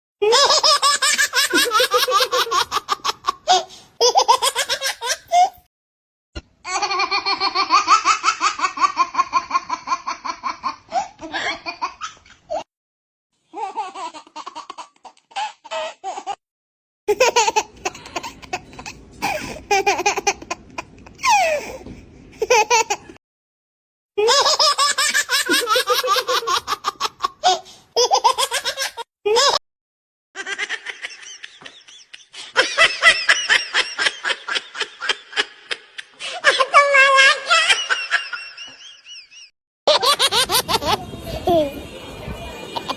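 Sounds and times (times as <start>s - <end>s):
babies laughing: 0.2s - 5.6s, 6.7s - 12.6s, 17.1s - 21.7s, 24.2s - 29.6s, 30.4s - 42.9s.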